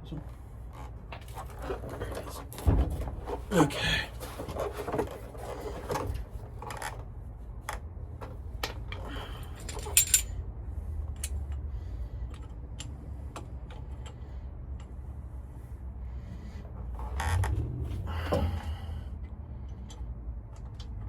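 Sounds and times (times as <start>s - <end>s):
low steady hum: 0.0s - 21.0s
metal tools clicking and clinking: 8.7s - 10.4s.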